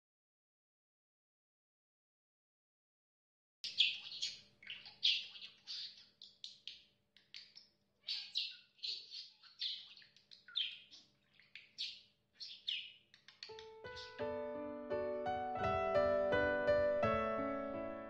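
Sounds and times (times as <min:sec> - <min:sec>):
parakeet chirping: 0:03.6 - 0:14.3.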